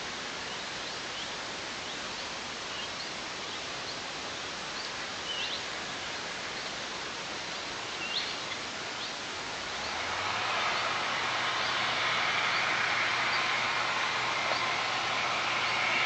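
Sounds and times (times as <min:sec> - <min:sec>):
low engine hum: 0:09.3 - 0:16.0
steady rustling noise: 0:09.4 - 0:16.0.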